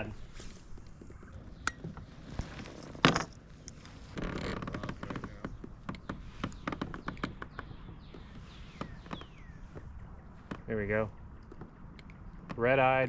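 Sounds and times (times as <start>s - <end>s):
small clicks and taps: 11.4s - 12.6s.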